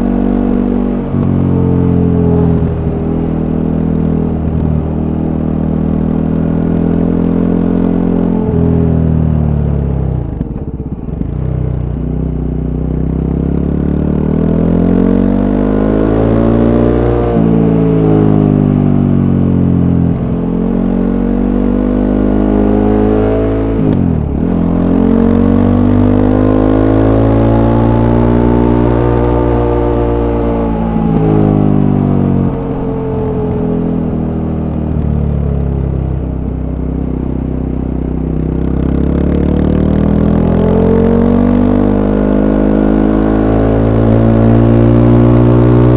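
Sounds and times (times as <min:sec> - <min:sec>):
motorcycle engine accelerating: 0:00.0 - 0:45.9.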